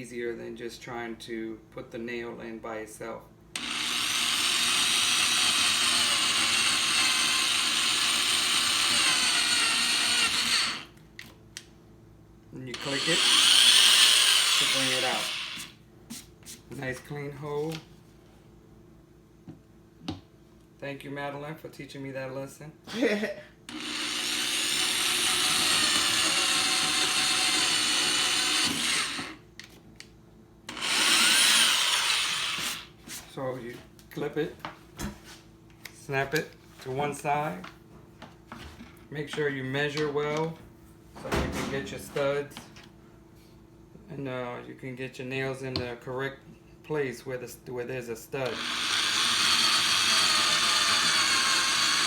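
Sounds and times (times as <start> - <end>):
electric drill boring into wall: 3.6 - 10.9, 12.8 - 15.8, 23.7 - 29.4, 30.7 - 32.9, 48.5 - 52.0.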